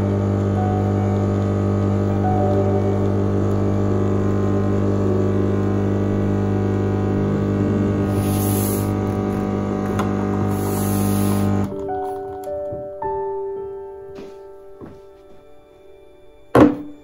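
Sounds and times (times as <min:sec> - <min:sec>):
low hum of held tones: 0:00.0 - 0:11.7
brief high hiss: 0:08.1 - 0:09.2, 0:10.5 - 0:11.5.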